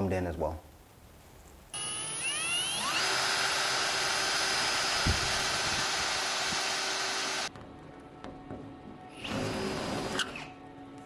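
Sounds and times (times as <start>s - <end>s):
small electric motor whirring: 1.8s - 7.5s.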